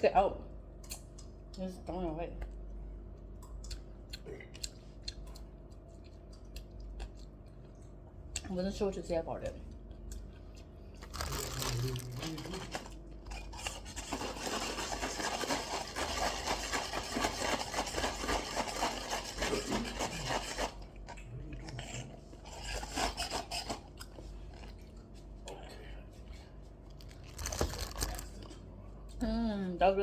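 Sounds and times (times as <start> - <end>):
food crunching: 3.2 - 8.5, 9.7 - 25.2, 26.9 - 28.6.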